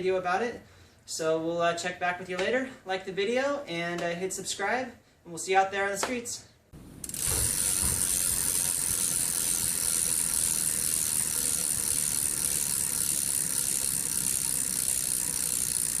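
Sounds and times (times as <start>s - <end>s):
bicycle freewheel clicking: 7.0s - 16.0s.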